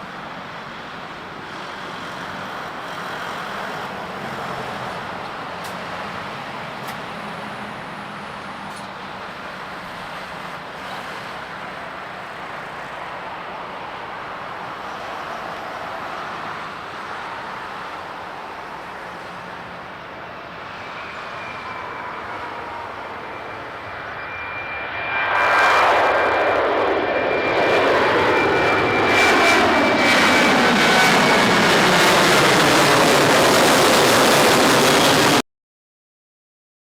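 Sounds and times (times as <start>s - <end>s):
jet engine rumble: 0.0s - 35.4s
whining engine tones: 19.3s - 35.4s.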